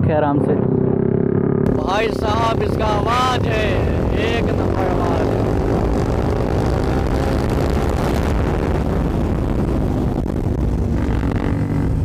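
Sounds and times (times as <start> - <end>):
motorcycle engines running: 0.0 - 12.0.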